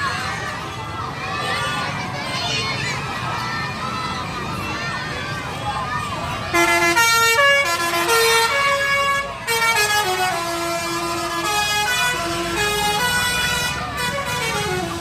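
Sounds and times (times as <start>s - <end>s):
bus musical horn melody: 6.5s - 15.0s.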